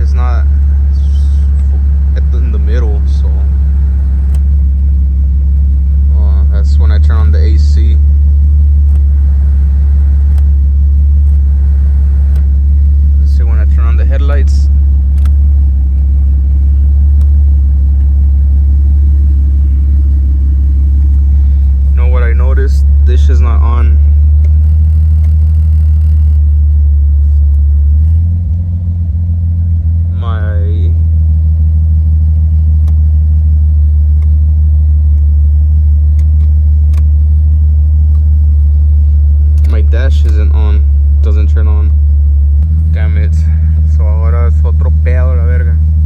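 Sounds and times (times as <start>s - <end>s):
car engine idling: 0.0s - 46.0s.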